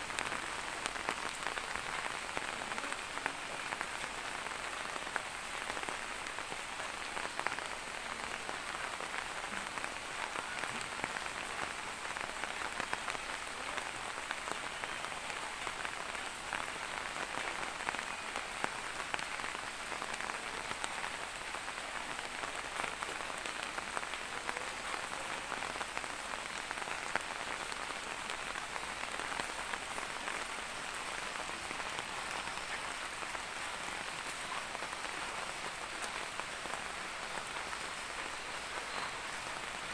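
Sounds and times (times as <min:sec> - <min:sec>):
rain pattering on surfaces: 0:00.0 - 0:39.9.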